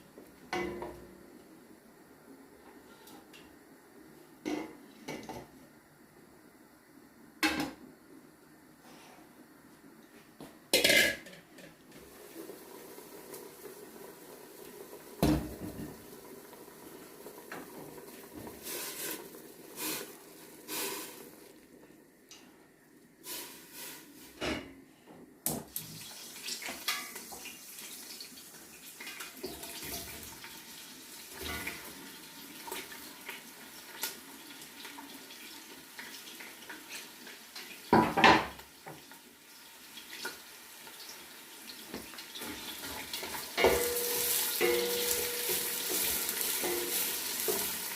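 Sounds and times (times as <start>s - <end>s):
faint steady hiss: 0.0s - 47.9s
pots and utensils clinking: 10.8s - 11.8s, 26.6s - 27.5s, 42.4s - 47.9s.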